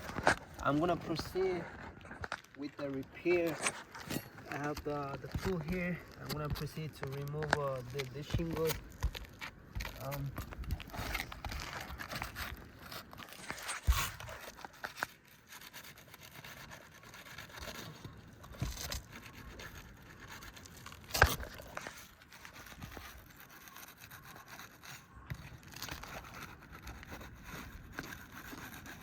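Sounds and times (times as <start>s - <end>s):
pry tool scraping roof shingles: 0.0s - 29.0s.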